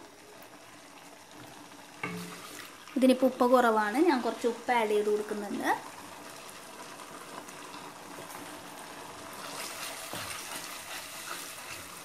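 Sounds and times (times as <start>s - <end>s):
sauce bubbling in a pan: 0.0s - 12.0s.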